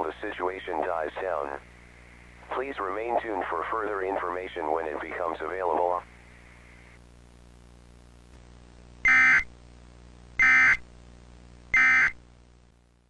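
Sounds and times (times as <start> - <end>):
buzzy two-tone data chirps: 9.0 - 9.5, 10.4 - 10.8, 11.7 - 12.2.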